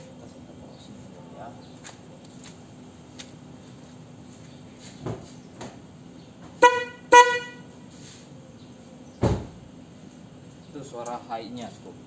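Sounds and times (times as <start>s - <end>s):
horn toots: 6.6s - 7.8s.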